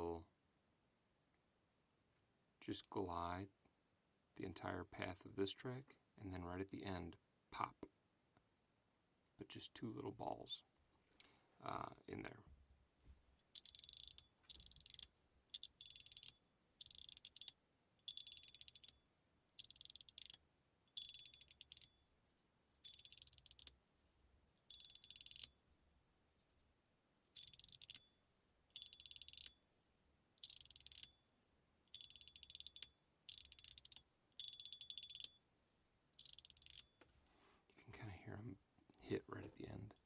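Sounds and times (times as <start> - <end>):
balls rattling in fidget slider: 13.5 - 19.0, 19.6 - 21.9, 22.8 - 23.8, 24.7 - 25.5, 27.4 - 28.0, 28.7 - 29.6, 30.4 - 31.1, 31.9 - 35.4, 36.2 - 36.9
fidget slider clicks: 13.6 - 17.5, 18.1 - 18.9, 19.6 - 20.4, 21.0 - 21.9, 22.8 - 23.7, 24.7 - 25.5, 27.4 - 28.0, 28.8 - 29.5, 30.4 - 31.1, 31.9 - 35.3, 36.2 - 36.9.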